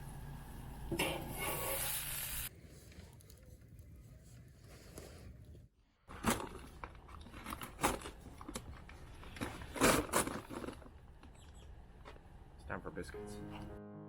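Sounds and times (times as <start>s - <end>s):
objects knocking and scraping: 6.1s - 11.4s.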